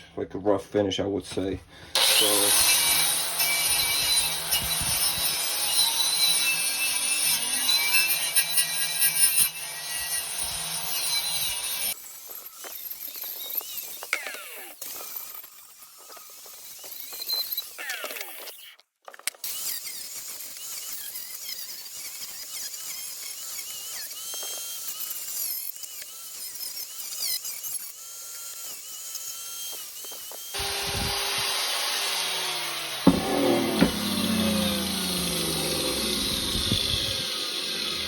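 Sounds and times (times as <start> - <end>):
wire brush grinder squealing on metal: 1.9 - 18.8, 19.4 - 38.0
sharp knocks: 33.0 - 35.6.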